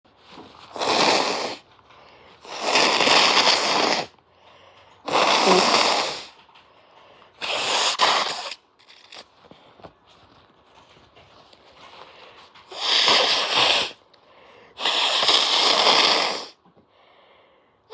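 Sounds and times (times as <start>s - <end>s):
person blowing nose: 0.6s - 1.7s, 2.4s - 4.2s, 5.0s - 6.4s, 7.4s - 9.3s, 12.7s - 14.0s, 14.8s - 16.6s.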